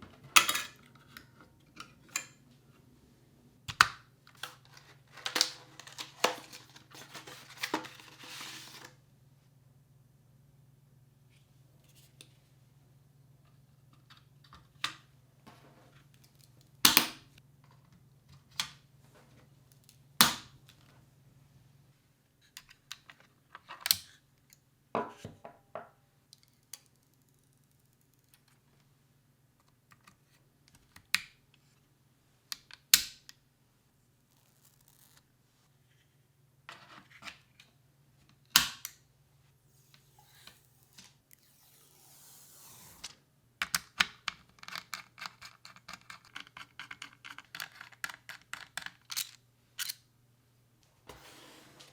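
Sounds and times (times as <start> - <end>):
low steady hum: 0.0 - 22.4
packaging rustle: 5.1 - 8.8.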